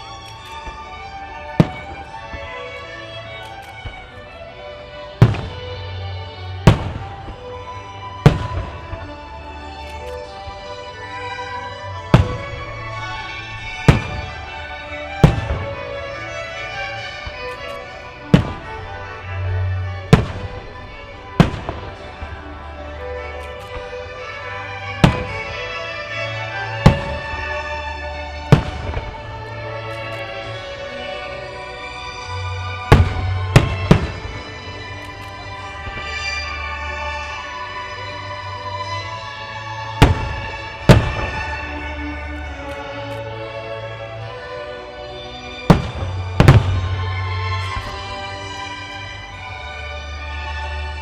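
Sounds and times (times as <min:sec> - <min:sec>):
music over loudspeakers: 0:00.0 - 0:51.0
firework shells bursting: 0:12.0 - 0:30.9, 0:31.9 - 0:36.7, 0:40.0 - 0:43.3, 0:45.5 - 0:49.2.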